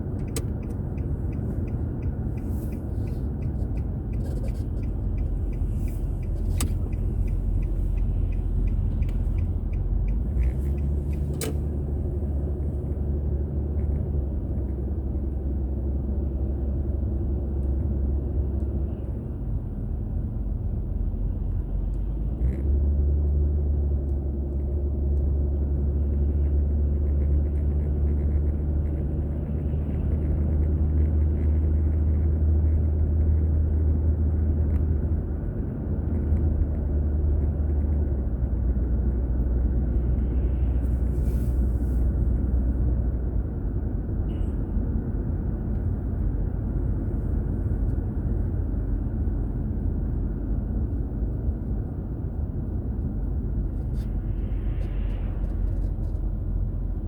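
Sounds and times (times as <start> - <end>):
car engine and road noise: 0.0 - 57.0
brief hiss: 40.8 - 42.2.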